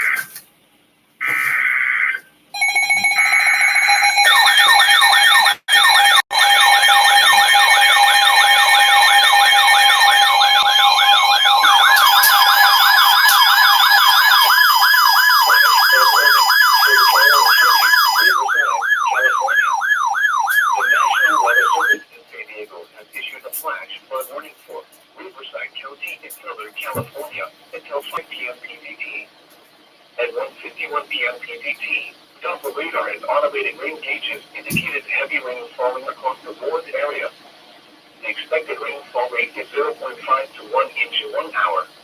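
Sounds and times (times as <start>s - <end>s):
wailing siren-like sweep: 3.4s - 22.0s
steady beeping tones: 5.8s - 22.0s.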